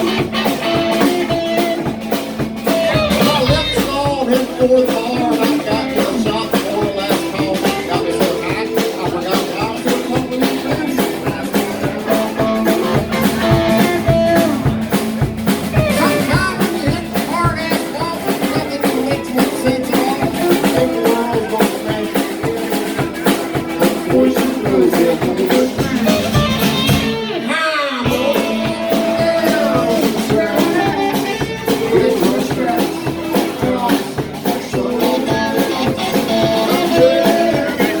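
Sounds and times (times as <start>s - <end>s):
bass: 0.0s - 38.0s
drum kit: 0.0s - 38.0s
electric guitar: 0.0s - 38.0s.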